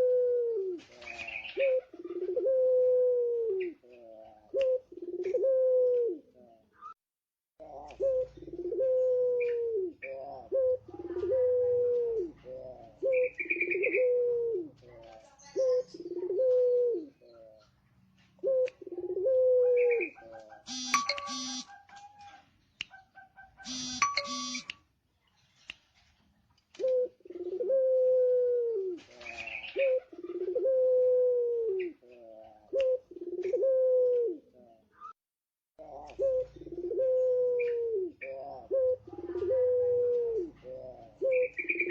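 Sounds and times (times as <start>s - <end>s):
dove cooing: 0.0s - 6.7s, 7.6s - 24.7s, 26.8s - 35.1s, 35.8s - 41.9s
bird twittering: 19.8s - 21.8s, 22.9s - 24.7s.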